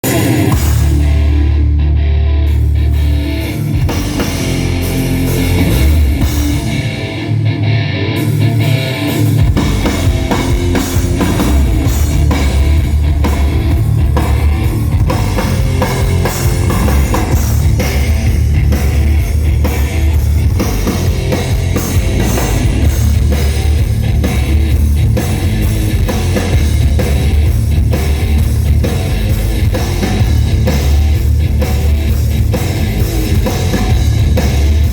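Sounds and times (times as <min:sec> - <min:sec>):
bass guitar: 0:00.0 - 0:34.9
drum kit: 0:00.0 - 0:34.9
electric guitar: 0:00.0 - 0:34.9.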